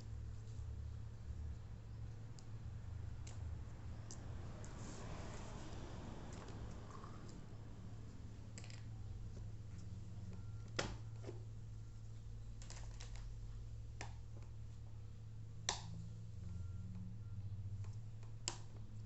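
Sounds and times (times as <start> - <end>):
low steady hum: 0.0 - 19.0
plastic fan parts clicking: 2.3 - 4.8.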